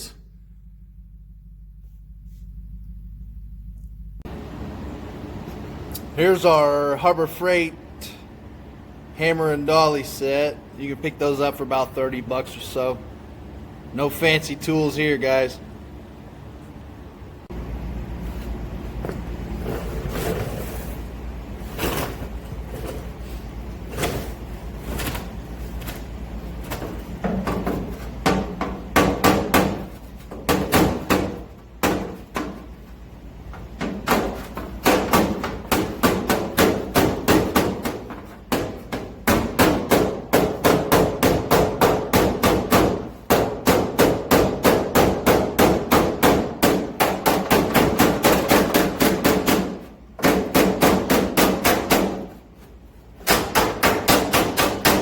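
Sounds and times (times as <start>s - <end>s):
hammer tapping on sheet metal: 27.2s - 32.6s, 33.8s - 52.4s, 53.2s - 55.0s.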